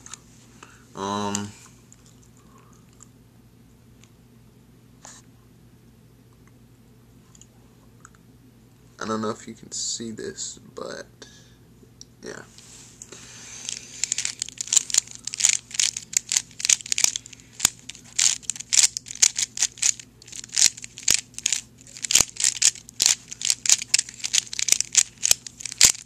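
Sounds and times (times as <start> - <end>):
puzzle cube layers clicking: 14.0 - 26.0.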